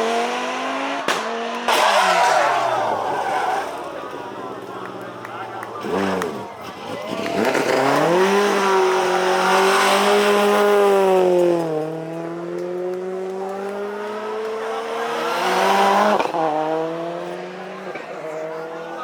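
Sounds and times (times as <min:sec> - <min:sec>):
rally car engine revving: 0:00.0 - 0:19.0
tyre squeal: 0:01.7 - 0:04.3.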